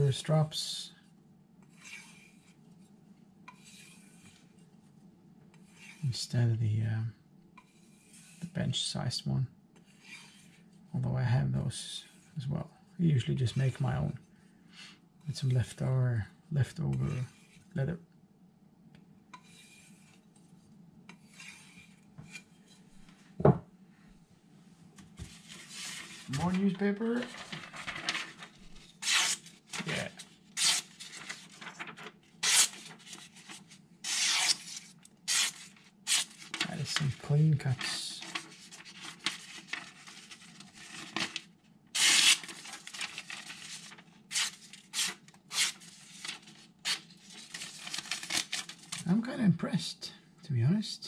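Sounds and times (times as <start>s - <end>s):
knock: 23.4s - 23.7s
paper rustling: 25.1s - 49.1s
knife slicing through newspaper: 29.0s - 30.0s, 30.6s - 31.5s, 32.4s - 33.4s, 34.0s - 36.5s, 42.0s - 48.7s.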